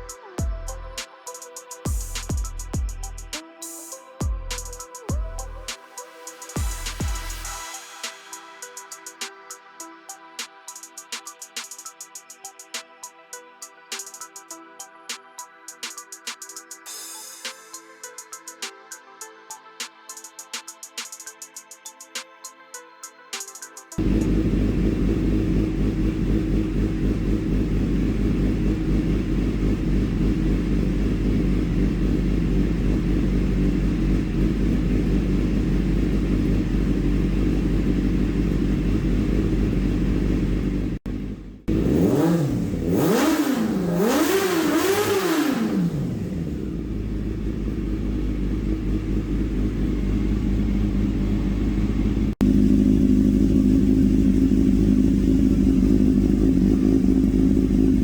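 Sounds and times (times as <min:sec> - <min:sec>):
motorcycle engine idling and revving: 0:00.0 - 0:01.1, 0:01.9 - 0:03.4, 0:04.2 - 0:08.3, 0:24.0 - 0:58.0.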